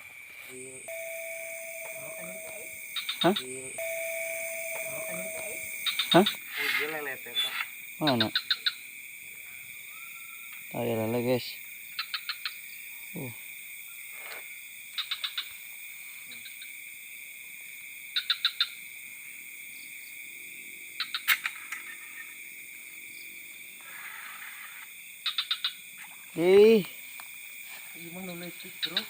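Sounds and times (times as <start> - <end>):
insects trilling: 0.0 - 29.0
four-note frog call: 0.5 - 6.5.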